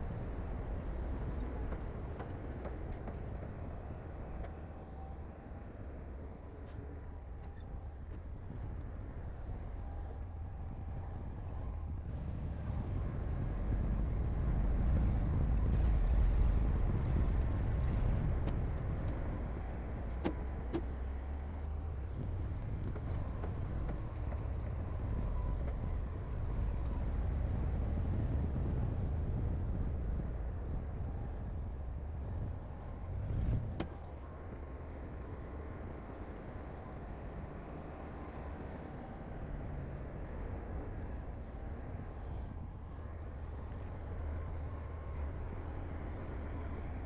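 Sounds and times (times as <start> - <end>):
diesel earthmoving equipment rumbling: 11.0 - 47.0.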